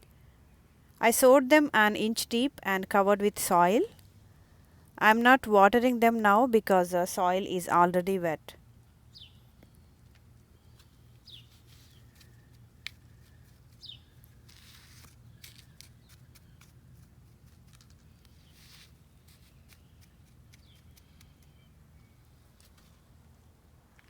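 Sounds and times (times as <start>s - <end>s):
low steady hum: 0.0s - 24.0s
bird chirps: 9.1s - 9.8s, 10.5s - 12.6s, 13.2s - 14.3s, 18.4s - 22.4s.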